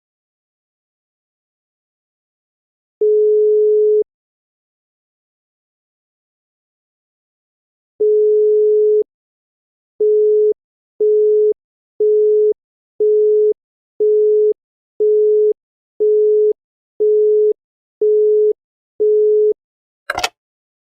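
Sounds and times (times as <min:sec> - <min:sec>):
telephone busy tone: 0:03.0 - 0:04.0.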